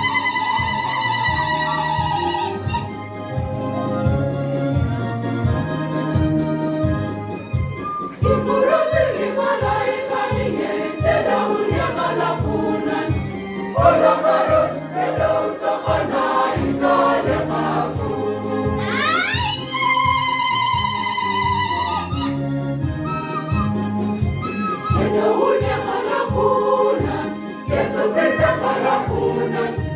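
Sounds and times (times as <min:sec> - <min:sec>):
choir singing a carol: 0:00.0 - 0:03.0, 0:08.1 - 0:22.0, 0:24.6 - 0:29.9
electronic keyboard accompaniment: 0:00.0 - 0:29.9.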